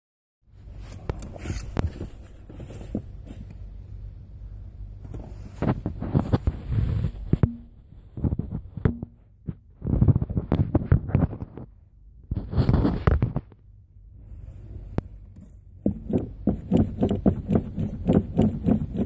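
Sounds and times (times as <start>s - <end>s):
car engine cranking and sputtering: 15.7s - 19.0s.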